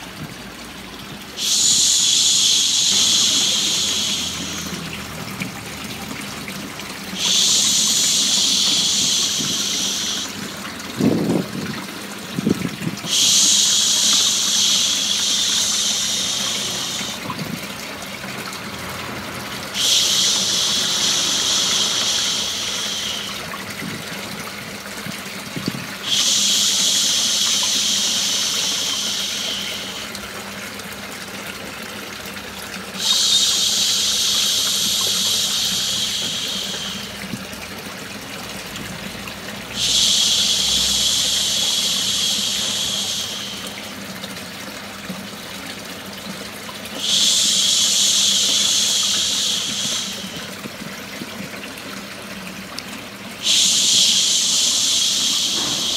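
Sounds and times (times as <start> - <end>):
running water white noise: 0.0 - 55.9
person shushing: 1.4 - 5.1, 7.2 - 10.4, 13.1 - 17.2, 19.8 - 23.4, 33.0 - 37.2, 53.4 - 55.9.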